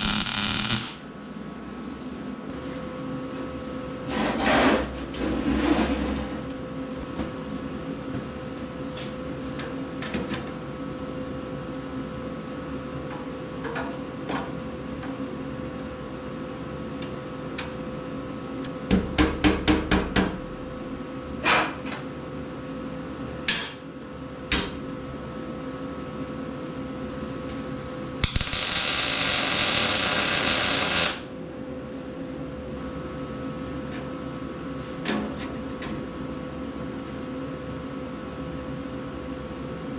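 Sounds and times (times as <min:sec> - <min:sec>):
steady machine hum: 0:00.0 - 0:39.9
hiss: 0:27.1 - 0:31.2.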